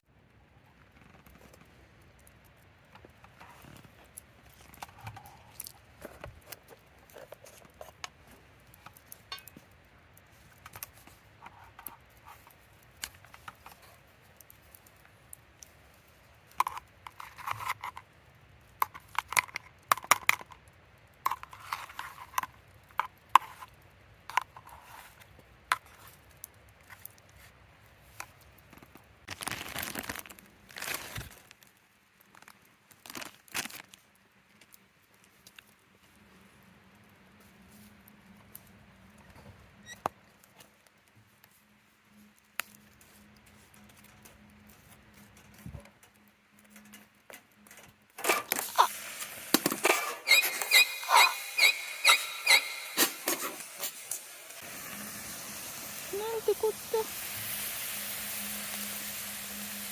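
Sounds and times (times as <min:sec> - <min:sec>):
rustling: 0:00.6 - 0:18.1, 0:21.3 - 0:54.7
light clicks and clinks: 0:08.9 - 0:09.8.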